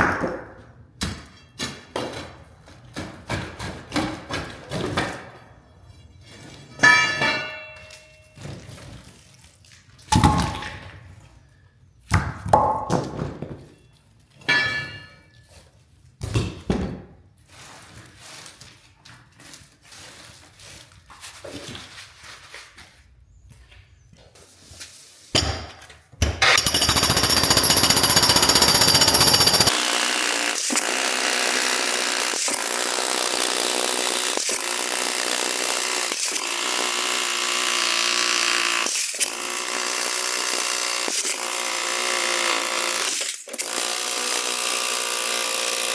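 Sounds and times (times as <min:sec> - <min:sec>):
heavy knocks on concrete: 0:12.2 - 0:13.6
jackhammer rattling: 0:26.3 - 0:45.9.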